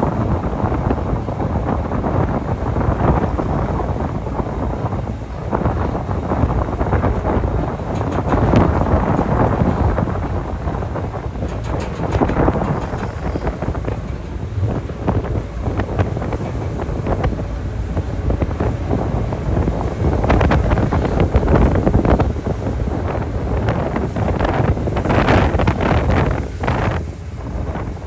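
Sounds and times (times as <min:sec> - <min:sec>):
low rumble of ship and sea: 0:00.0 - 0:28.0
wind buffeting microphone: 0:00.0 - 0:28.0.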